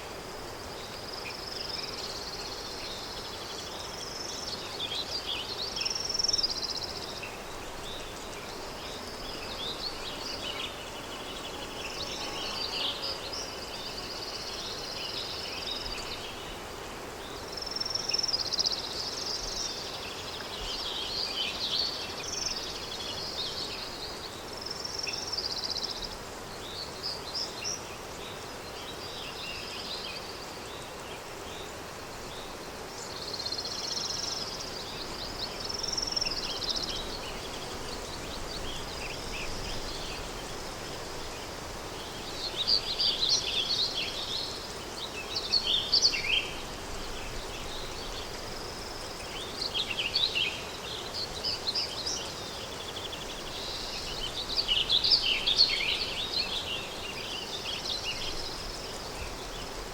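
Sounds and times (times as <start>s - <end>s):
wind hiss: 0.0s - 59.9s
small birds chirping: 0.7s - 59.9s.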